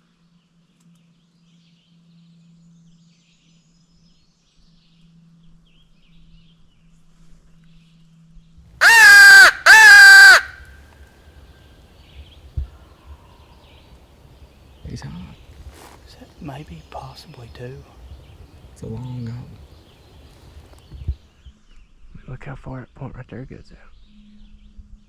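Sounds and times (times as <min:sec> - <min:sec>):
crow call caws: 0:08.8 - 0:10.8, 0:12.0 - 0:21.0.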